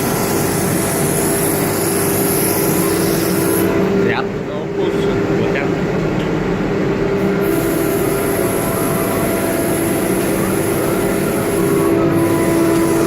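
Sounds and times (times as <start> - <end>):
high machine whine: 0.0 - 13.0
router machine running: 7.4 - 13.0.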